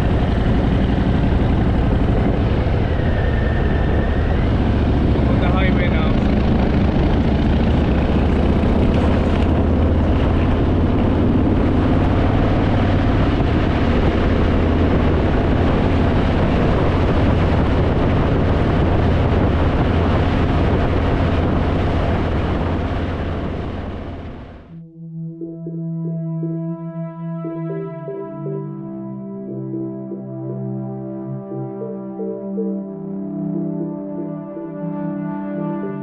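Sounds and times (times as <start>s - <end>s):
motorcycle engine running: 0.0s - 24.8s
wind and road rush: 0.0s - 24.8s.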